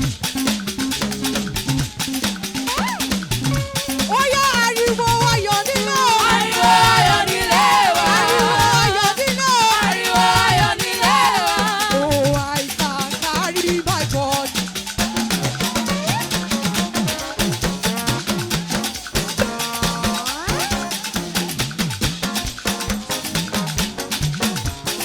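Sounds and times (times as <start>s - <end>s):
shaker and percussion groove: 0.0s - 25.0s
repeating bass line: 5.2s - 9.2s.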